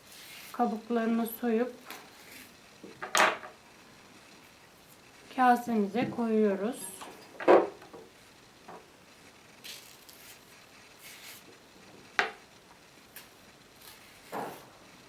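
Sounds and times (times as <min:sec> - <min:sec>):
soft rustling and rubbing: 0:00.0 - 0:01.2, 0:01.8 - 0:03.0.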